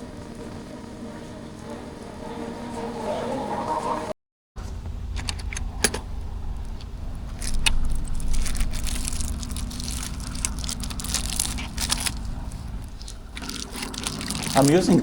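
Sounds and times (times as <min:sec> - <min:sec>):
low rumble: 0:00.0 - 0:14.7
plastic bags crinkling: 0:07.4 - 0:15.0.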